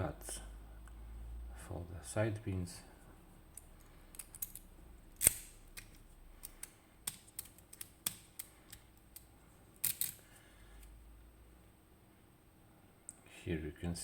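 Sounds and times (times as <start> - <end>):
lock and key clicking: 4.1 - 10.2.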